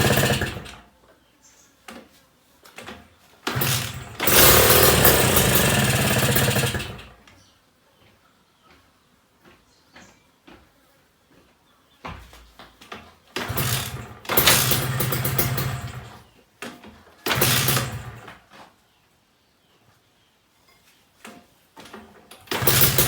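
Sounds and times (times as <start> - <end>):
two-stroke engine starting and dying: 0.0 - 0.8, 2.8 - 7.2, 13.4 - 18.4, 22.3 - 23.0.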